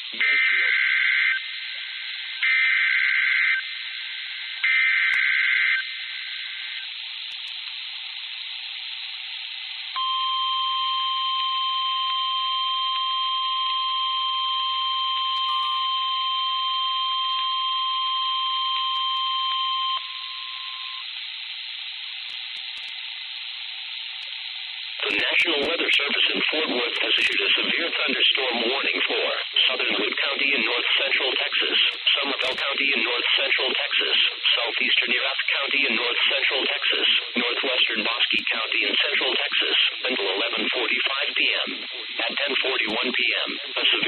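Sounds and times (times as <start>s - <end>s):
radio hiss: 0.0s - 2.5s, 20.7s - 44.0s
single-pitch warning alarm tone: 9.9s - 21.2s.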